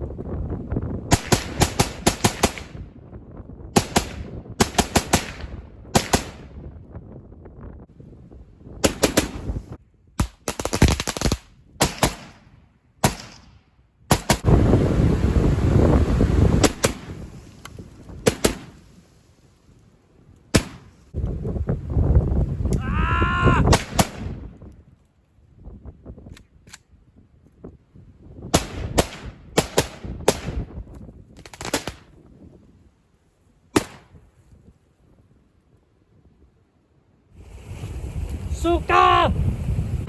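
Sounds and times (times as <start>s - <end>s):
wind noise on microphone: 0.0s - 36.6s, 37.3s - 40.0s
gunshots: 1.1s - 2.8s, 3.8s - 6.5s, 8.8s - 9.5s, 10.2s - 14.5s, 16.6s - 17.2s, 18.2s - 18.8s, 20.5s - 21.0s, 23.7s - 24.3s, 28.5s - 30.6s, 33.8s - 34.1s.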